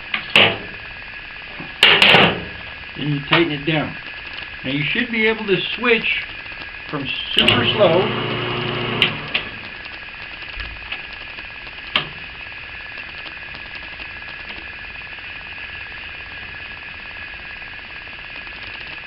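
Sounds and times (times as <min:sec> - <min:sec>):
brake lathe whining: 0:07.0 - 0:09.9.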